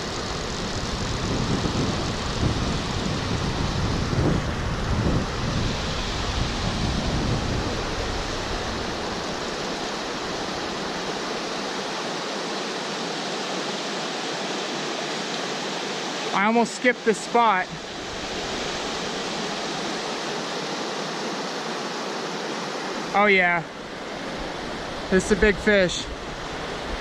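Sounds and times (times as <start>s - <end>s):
stream water rushing: 0.0s - 27.0s.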